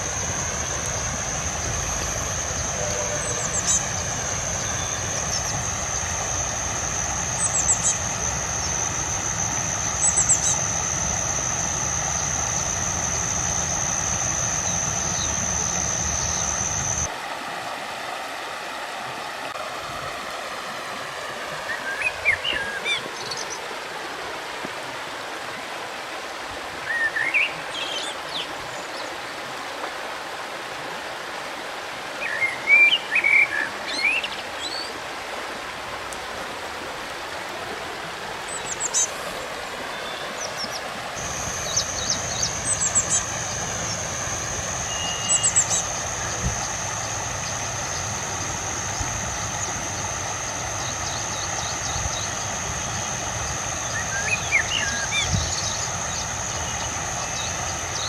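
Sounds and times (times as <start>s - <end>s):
high whine: 0.0s - 17.1s, 41.1s - 58.0s
small birds chirping: 0.0s - 17.1s, 39.9s - 58.0s
stream flowing: 0.0s - 58.0s.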